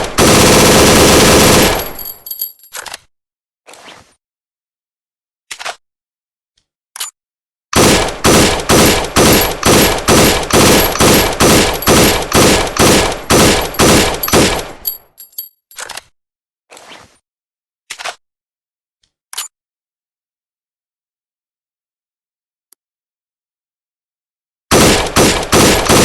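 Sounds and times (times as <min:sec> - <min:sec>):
rifle firing rapid shots: 0:00.0 - 0:02.2, 0:07.8 - 0:14.9, 0:24.7 - 0:26.0.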